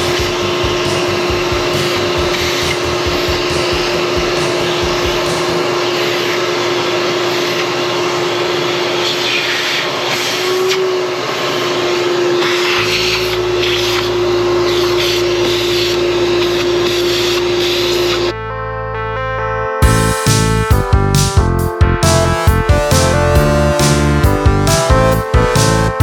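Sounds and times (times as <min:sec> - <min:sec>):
vacuum cleaner running: 0:00.0 - 0:18.3
low hum: 0:12.0 - 0:19.2, 0:19.8 - 0:25.5.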